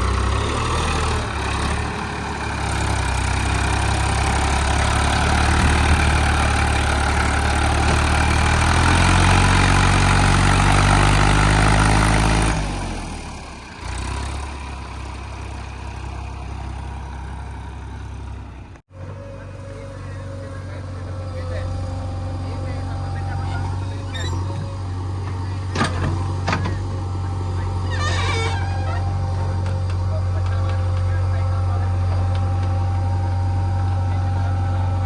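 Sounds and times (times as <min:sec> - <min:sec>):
heavy diesel engine running: 0:00.0 - 0:35.0.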